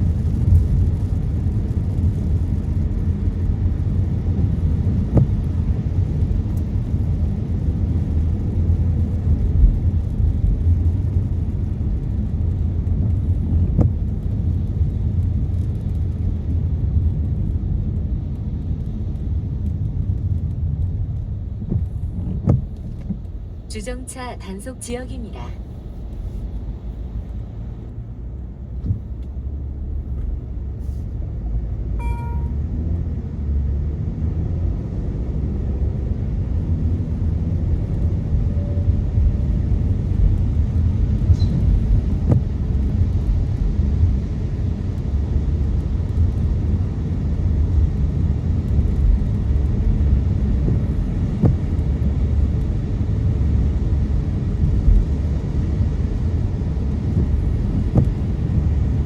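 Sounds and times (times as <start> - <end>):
car road noise and engine rumble: 0.0 - 59.0
short electronic beep: 32.0 - 32.6.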